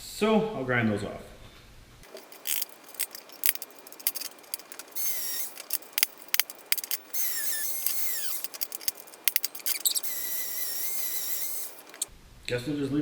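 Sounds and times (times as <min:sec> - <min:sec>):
handheld grinder whining: 0:02.0 - 0:12.1
metal clicking and knocking: 0:02.0 - 0:12.1.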